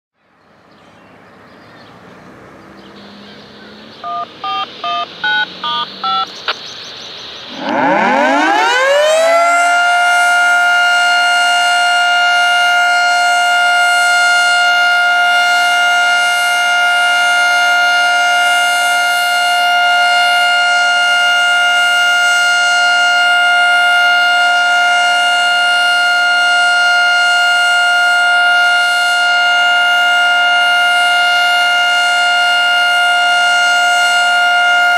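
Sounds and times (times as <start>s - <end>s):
three-tone siren winding up: 4.0s - 6.3s, 7.5s - 11.3s
touch-tone beeps: 4.0s - 6.3s.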